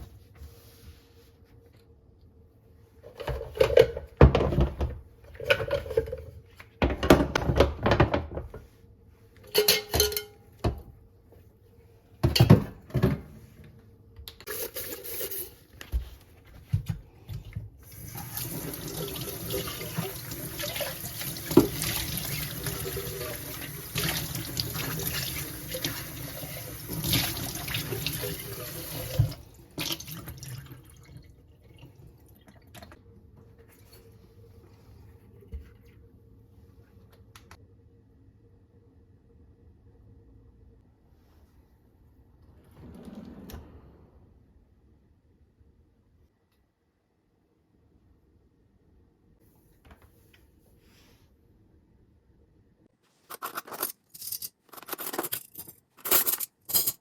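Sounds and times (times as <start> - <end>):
kitchen tap running: 17.9 - 32.9.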